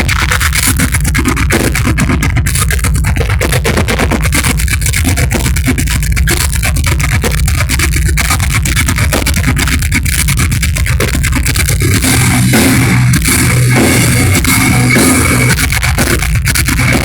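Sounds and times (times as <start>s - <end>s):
fast drumming: 0.0s - 17.0s
metal band playing live: 0.0s - 17.0s
held low bass and guitar notes: 11.8s - 17.0s.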